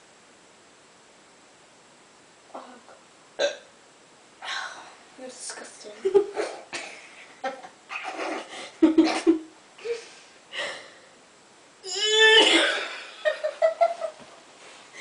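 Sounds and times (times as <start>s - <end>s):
person burping: 3.4s - 3.7s, 11.8s - 13.2s.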